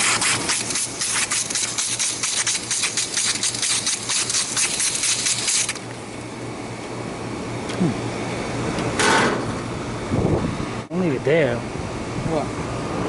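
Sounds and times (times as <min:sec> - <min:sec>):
pressurized liquid spraying hiss: 0:00.0 - 0:05.8.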